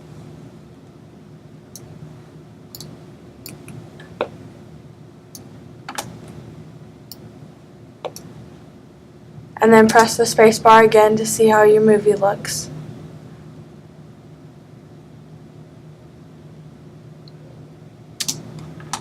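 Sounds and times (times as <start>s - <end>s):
low room hum: 0.0s - 19.0s
computer clicks: 2.7s - 4.4s, 8.0s - 8.3s, 18.2s - 19.0s.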